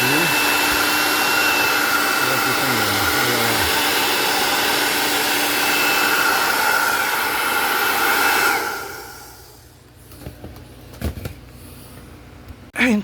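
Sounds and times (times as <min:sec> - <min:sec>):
hair dryer whining: 0:00.0 - 0:09.7.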